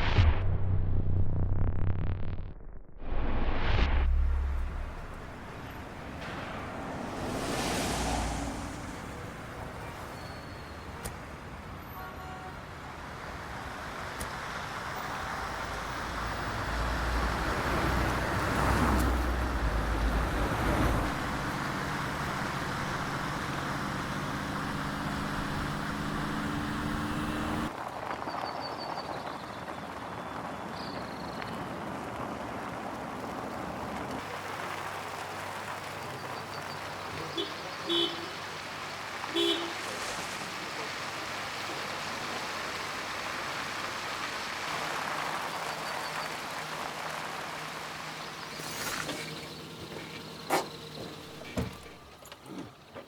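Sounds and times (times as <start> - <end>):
loud rumble: 0.0 - 10.1
whoosh: 0.0 - 10.4
steady rushing traffic-like noise: 4.2 - 28.2.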